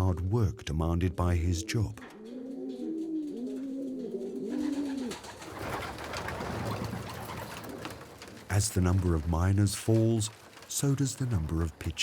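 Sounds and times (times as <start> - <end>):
pigeons cooing: 0.3 - 9.3
rustling and shuffling: 2.0 - 12.0.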